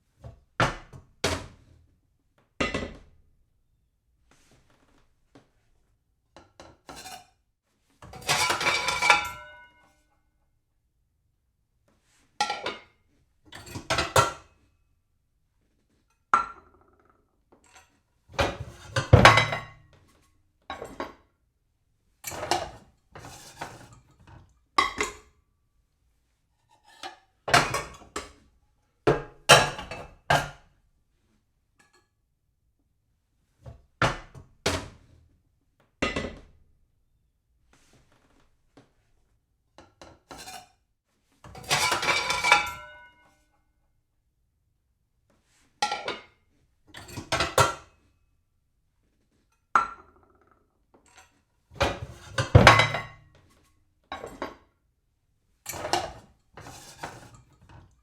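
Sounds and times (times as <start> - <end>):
dishes clattering and clinking: 8.1 - 9.8, 17.6 - 19.9, 29.1 - 30.6, 41.5 - 43.2, 47.0 - 47.9, 51.0 - 53.4, 54.1 - 54.7, 55.7 - 57.9.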